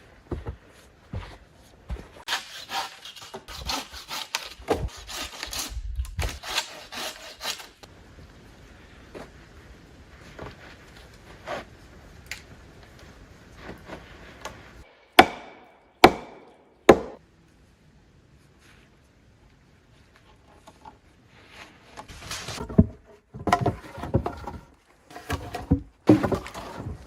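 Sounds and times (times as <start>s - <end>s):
hand tool rasping wood: 2.3s - 5.7s, 6.3s - 7.7s.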